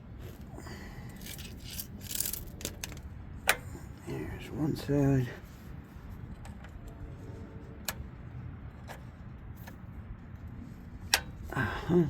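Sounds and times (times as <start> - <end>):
low steady rumble: 0.0 - 12.0
plastic and metal parts clicking: 1.2 - 3.6.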